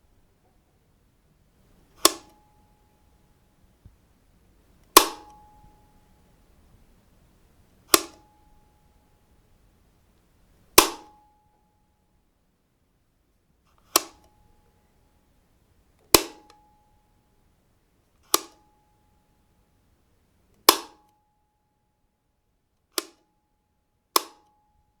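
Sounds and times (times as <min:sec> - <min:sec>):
light switch clicks: 0:02.0 - 0:02.4, 0:07.9 - 0:08.3, 0:24.2 - 0:24.4.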